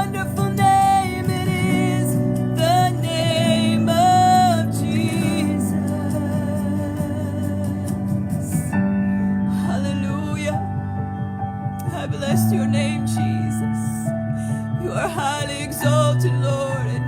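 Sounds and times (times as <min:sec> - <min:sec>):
band playing sustained chords: 0:00.0 - 0:17.0.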